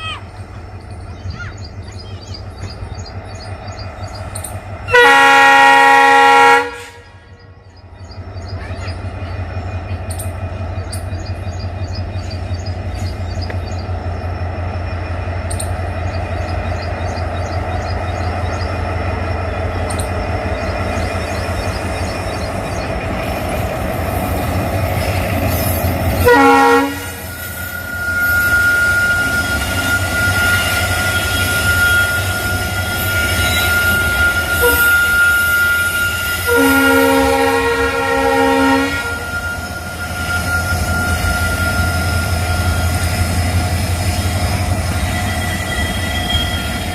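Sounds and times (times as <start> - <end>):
diesel locomotive engine throb: 0.0 - 46.9
train horn blast: 4.9 - 7.4, 26.2 - 43.0
freight wagons wheel squeal: 7.8 - 46.9.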